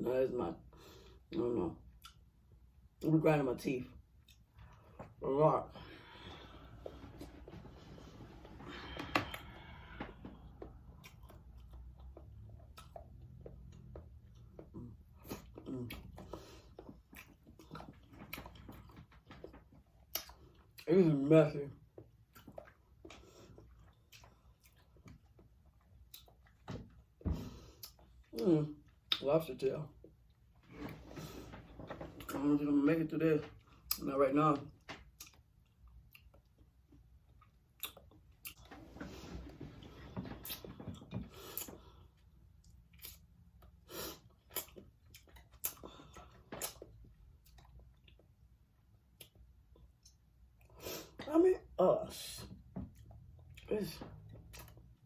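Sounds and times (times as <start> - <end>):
wet chewing and lip-smacking: 1.8 - 2.5, 4.0 - 5.2, 9.0 - 20.9, 21.8 - 29.3, 34.7 - 38.9, 40.3 - 51.2, 52.6 - 55.0.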